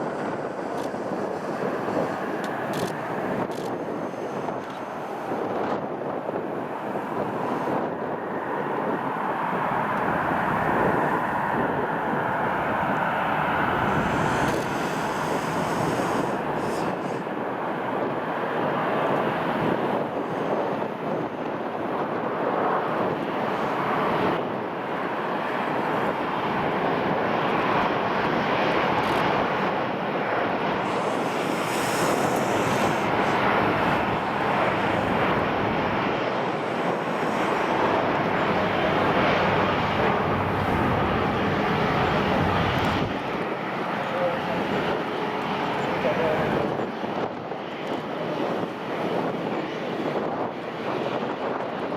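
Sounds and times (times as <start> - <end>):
jet engines running: 0.0 - 51.9.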